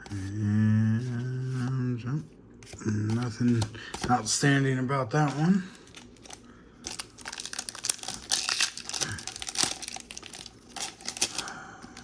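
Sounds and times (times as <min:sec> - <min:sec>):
foil wrapper crinkling and tearing: 0:05.7 - 0:12.0.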